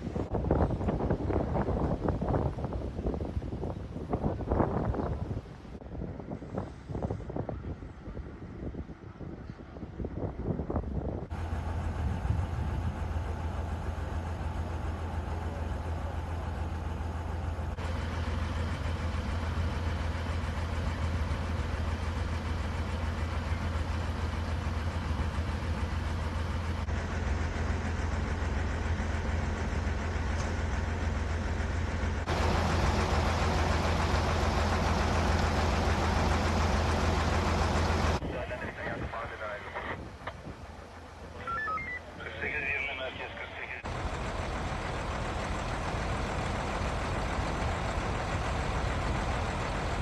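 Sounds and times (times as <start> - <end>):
engine idling: 11.3 - 50.0.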